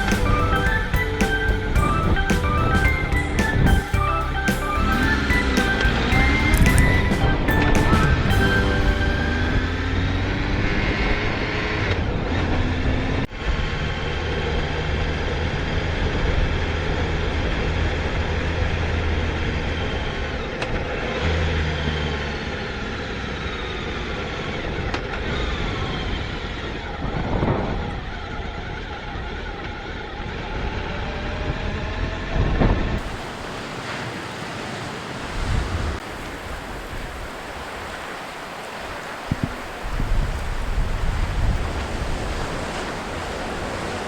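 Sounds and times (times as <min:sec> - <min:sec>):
ocean surf: 0:00.0 - 0:13.2, 0:33.0 - 0:44.0
wind buffeting microphone: 0:00.0 - 0:13.8, 0:24.5 - 0:44.0.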